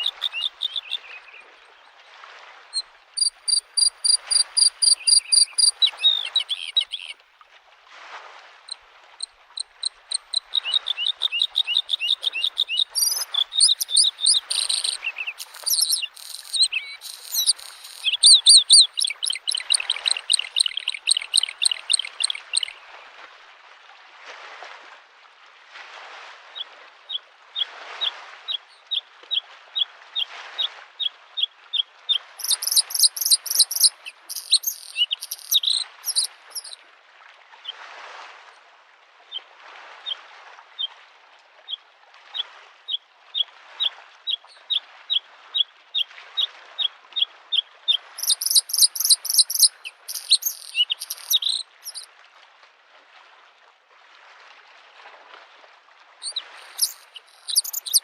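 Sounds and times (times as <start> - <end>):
short high ticking bird notes: 0.0 - 1.0, 3.2 - 7.1, 9.6 - 22.7, 32.4 - 36.8, 48.2 - 52.0, 56.2 - 58.0
bird singing trilled phrases: 0.0 - 1.4, 3.2 - 7.2, 9.6 - 22.8, 32.4 - 36.8, 48.2 - 52.1, 56.2 - 58.0
lake waves lapping shore: 0.0 - 28.5, 32.2 - 39.0, 44.8 - 58.0.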